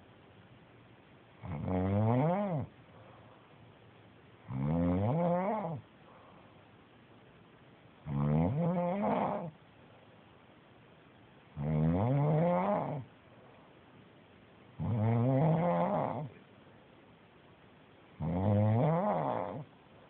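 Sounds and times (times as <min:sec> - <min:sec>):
person snoring: 0:01.4 - 0:02.7, 0:14.8 - 0:16.4, 0:18.2 - 0:19.7.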